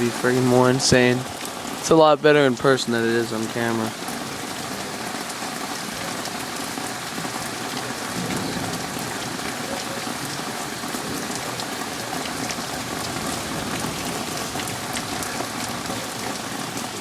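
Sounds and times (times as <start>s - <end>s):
rain drop hits: 0.0s - 17.0s
rain falling steadily: 0.0s - 17.0s.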